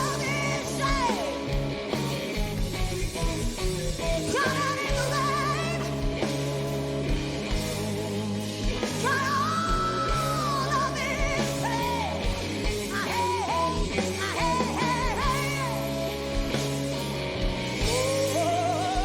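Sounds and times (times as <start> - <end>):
woman singing with vibrato: 0.0 - 1.5, 4.2 - 6.2, 9.0 - 12.2, 12.9 - 16.0, 17.8 - 19.0
band playing sustained low chords: 0.0 - 19.0.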